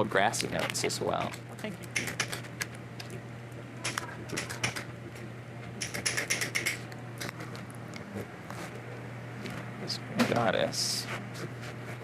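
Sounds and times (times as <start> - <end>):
steady low hum: 0.0 - 12.0
utensils clicking against dishes: 1.2 - 2.5, 5.8 - 6.8.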